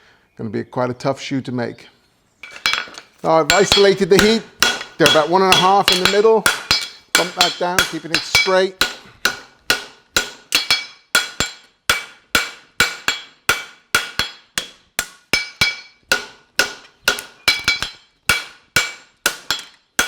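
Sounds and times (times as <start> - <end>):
hammer striking steel on anvil: 2.4 - 20.0.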